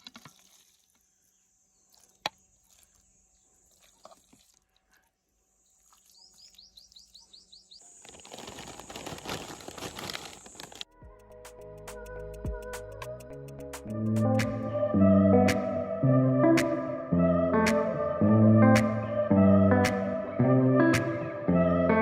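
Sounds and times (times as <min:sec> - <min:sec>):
birds chirping: 0:05.6 - 0:08.7.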